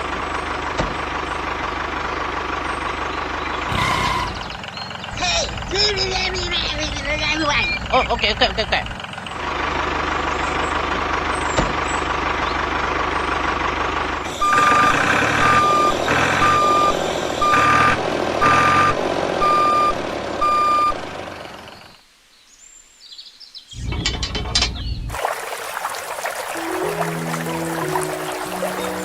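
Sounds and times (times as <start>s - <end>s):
vehicle motor running: 0.0s - 21.9s
reversing alarm beeping: 14.3s - 21.1s.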